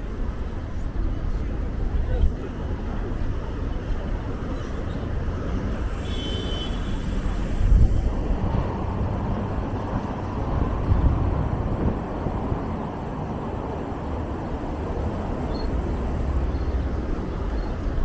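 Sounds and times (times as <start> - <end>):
passing car traffic: 5.7 - 16.6.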